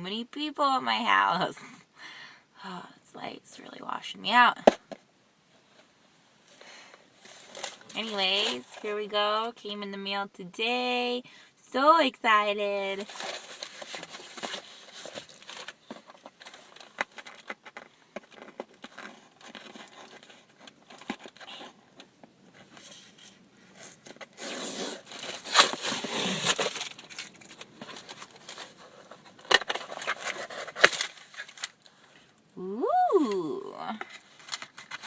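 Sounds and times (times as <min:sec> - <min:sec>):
small clicks and scrapes: 0:05.6 - 0:08.9, 0:13.0 - 0:32.4, 0:34.0 - 0:35.0
packaging rustling and tearing: 0:06.6 - 0:08.9, 0:13.0 - 0:32.3, 0:34.0 - 0:35.0.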